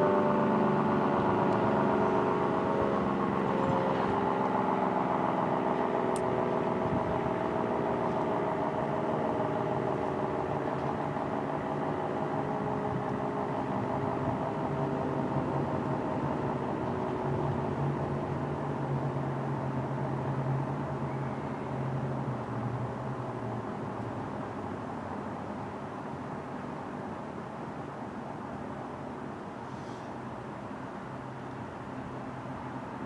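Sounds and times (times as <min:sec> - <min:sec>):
dual-tone tornado siren winding down: 0:00.0 - 0:24.0.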